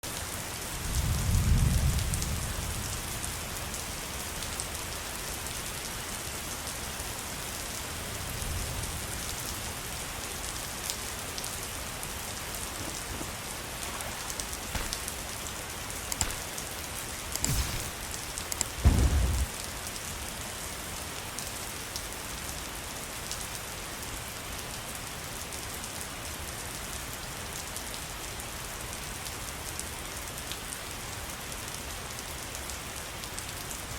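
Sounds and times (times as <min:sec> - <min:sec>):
short low rumbles: 0:18.8 - 0:19.6.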